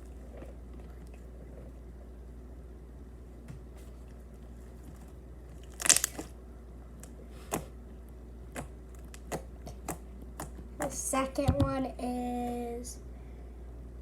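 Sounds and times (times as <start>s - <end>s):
low steady hum: 0.0s - 14.0s
slime crackling pops: 5.7s - 6.3s.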